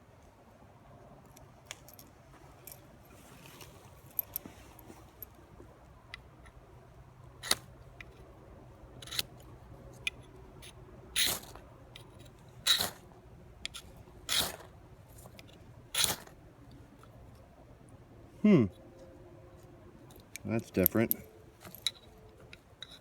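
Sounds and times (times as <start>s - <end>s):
knife rasping on fire-starting rod: 11.2s - 13.0s, 13.7s - 16.4s.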